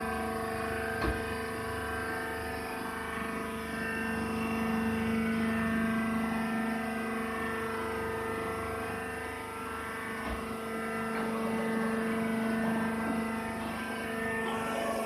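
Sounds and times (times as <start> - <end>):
motor and pump hum: 0.0 - 15.0.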